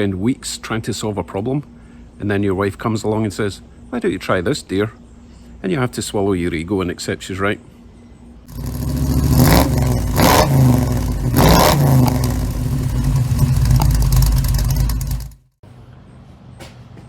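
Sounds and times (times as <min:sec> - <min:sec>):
car engine revving: 0:08.5 - 0:15.4.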